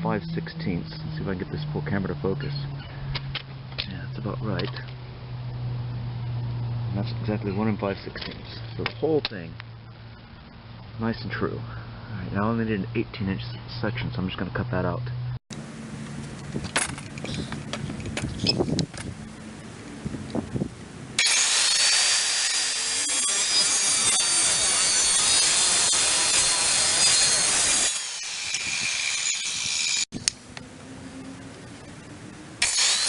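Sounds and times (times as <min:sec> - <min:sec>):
low hum: 0:00.0 - 0:33.0
power saw cutting board: 0:21.2 - 0:30.4, 0:32.6 - 0:33.0.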